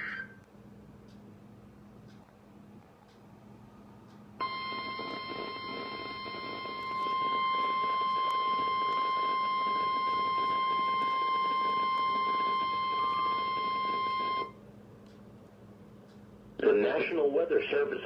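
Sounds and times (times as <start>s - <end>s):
faint receiver hiss: 0.4s - 18.0s
radio static: 4.4s - 14.4s
steady single-pitched beep: 4.4s - 14.6s.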